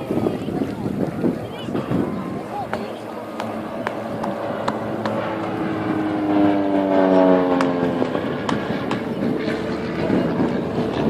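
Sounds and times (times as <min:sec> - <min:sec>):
aircraft engine passing: 0:00.0 - 0:11.0.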